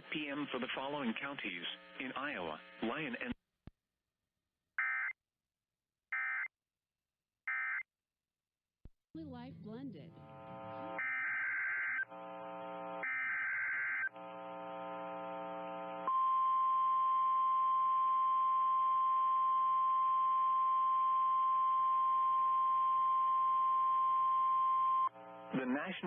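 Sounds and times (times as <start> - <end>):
loud steady alarm tone: 10.2 - 25.5.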